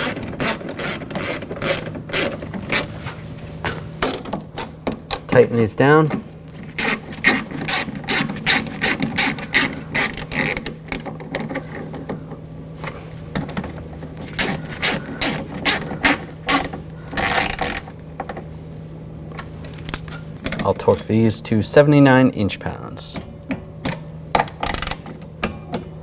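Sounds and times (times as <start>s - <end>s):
hand ratchet clicking: 0.0s - 2.9s, 6.8s - 11.1s, 14.4s - 17.9s, 24.4s - 25.1s.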